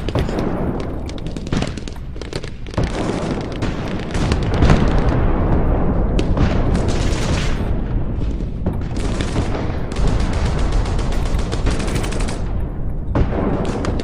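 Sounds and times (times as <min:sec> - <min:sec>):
airsoft guns firing bursts: 0:08.9 - 0:12.5.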